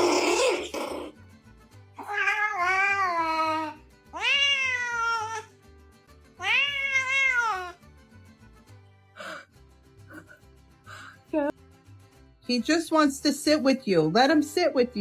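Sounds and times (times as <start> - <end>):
cat meowing: 2.0 - 5.5, 6.4 - 7.8.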